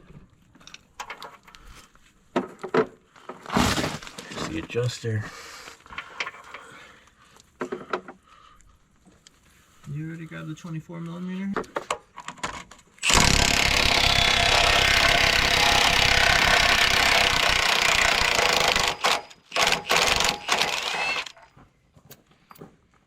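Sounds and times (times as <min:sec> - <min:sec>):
impact wrench hammering: 0:13.0 - 0:21.5.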